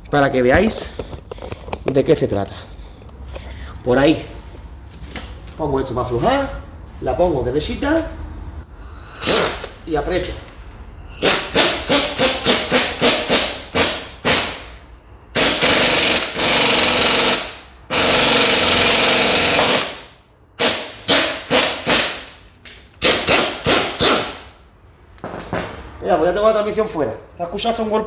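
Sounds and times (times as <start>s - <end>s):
pneumatic impact wrench hammering: 9.0s - 9.8s, 11.2s - 24.6s.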